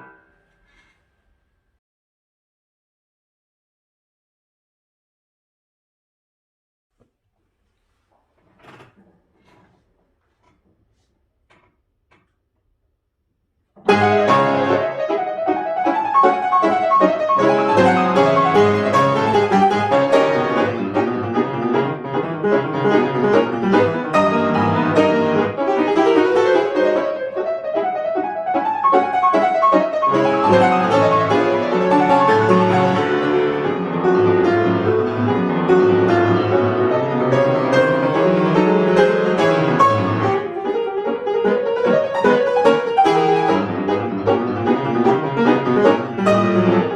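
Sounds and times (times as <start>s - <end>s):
piano piece: 0.0s - 0.9s, 13.8s - 46.9s.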